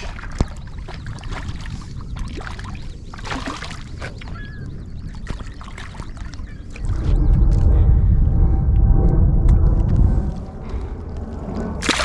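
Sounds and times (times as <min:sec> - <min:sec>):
clicks and splashes: 0:00.0 - 0:04.4, 0:11.8 - 0:12.0
water sloshing: 0:00.0 - 0:07.0, 0:11.8 - 0:12.0
wind rumbling on microphone: 0:00.0 - 0:12.0.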